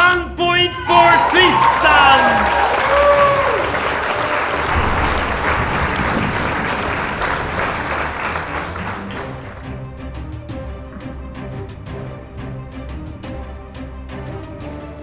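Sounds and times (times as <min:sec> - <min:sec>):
applause: 0:00.7 - 0:09.8.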